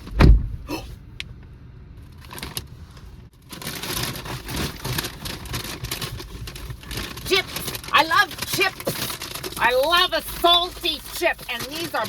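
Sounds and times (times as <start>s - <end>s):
chip bag crinkling: 3.4s - 12.0s.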